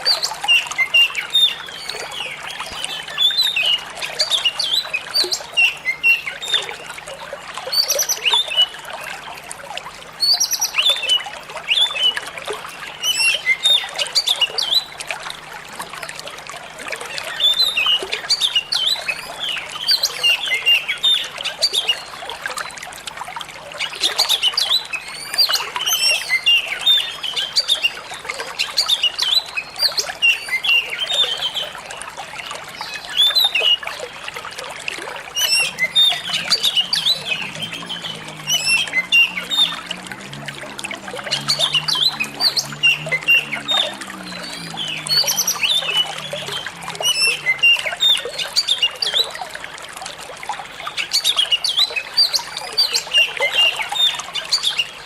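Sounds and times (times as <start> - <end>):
trickling water: 0.0 - 55.0
bird singing: 35.3 - 49.4.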